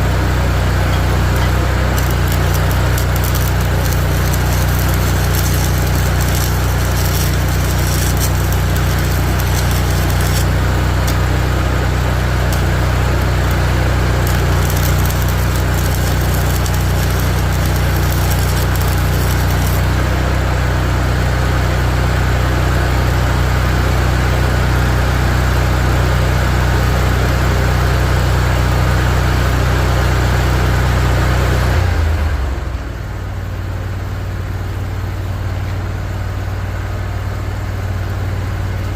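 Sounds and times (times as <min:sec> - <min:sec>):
welding machine drone: 0:00.0 - 0:35.4
welding arc crackling: 0:00.2 - 0:20.6.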